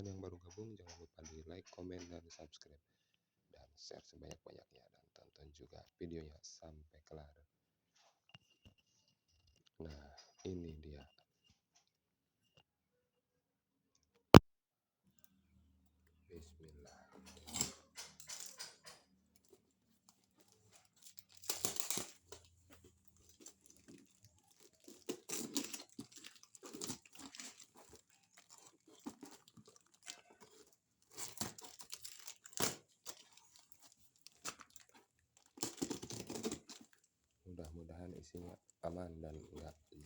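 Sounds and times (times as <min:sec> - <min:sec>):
packaging crinkling: 0:19.4 - 0:37.1
tape and cardboard ripping: 0:20.7 - 0:22.4, 0:23.2 - 0:37.0.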